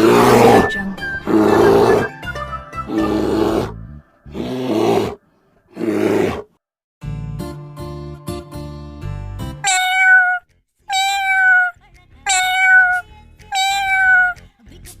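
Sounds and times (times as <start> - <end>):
cat meowing: 9.6 - 14.4.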